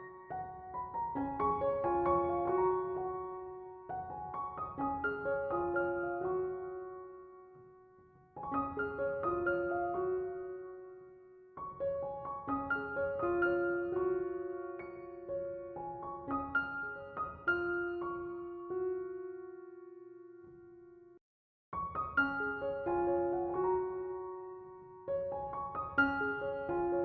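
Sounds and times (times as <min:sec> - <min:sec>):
gentle arpeggiated piano: 0:00.0 - 0:20.8, 0:21.8 - 0:27.0.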